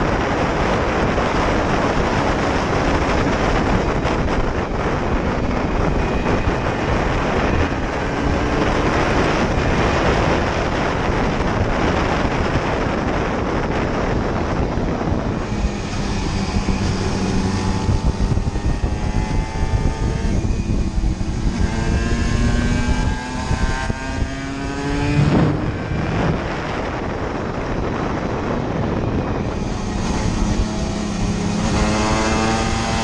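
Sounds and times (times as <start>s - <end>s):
wind rush on microphone: 0.0s - 33.0s
two-stroke engine revving: 29.4s - 33.0s.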